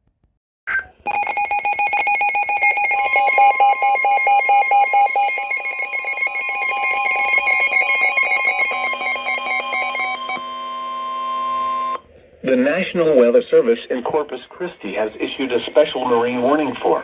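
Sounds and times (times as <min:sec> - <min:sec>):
steady high tone: 0:01.1 - 0:12.0
warbling alarm tone: 0:01.1 - 0:12.0.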